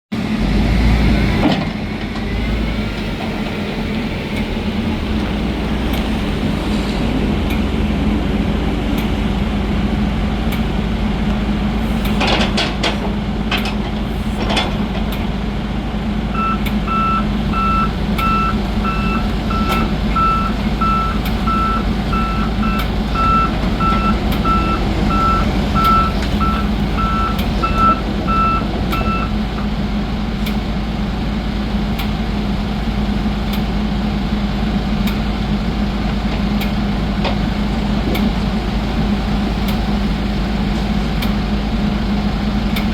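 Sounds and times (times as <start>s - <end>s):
excavator diesel engine running: 0.1s - 42.9s
travel alarm beeping: 16.4s - 29.4s.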